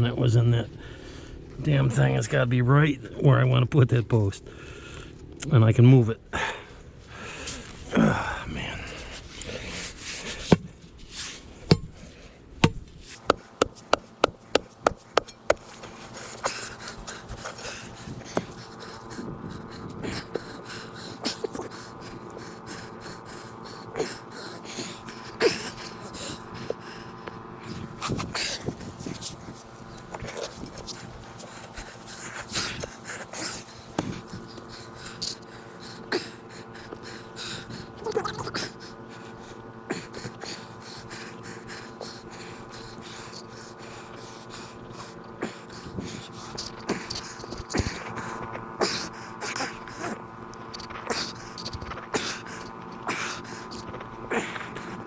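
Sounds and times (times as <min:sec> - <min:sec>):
steady hum: 0:00.0 - 0:55.0
man breathing hard: 0:00.7 - 0:01.5, 0:04.4 - 0:05.2, 0:06.3 - 0:10.6, 0:13.1 - 0:55.0
sharp knocks: 0:12.7 - 0:15.7
digging tool scraping and knocking stone: 0:13.1 - 0:20.2.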